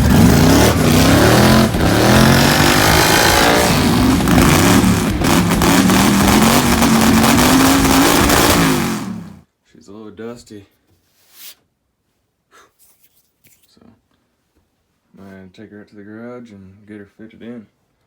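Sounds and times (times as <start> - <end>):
car engine revving: 0.0 - 9.4.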